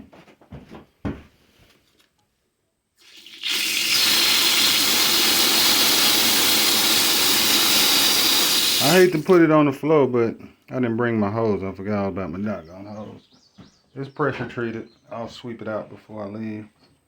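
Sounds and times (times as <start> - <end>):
water rushing out hard: 3.1 - 9.3.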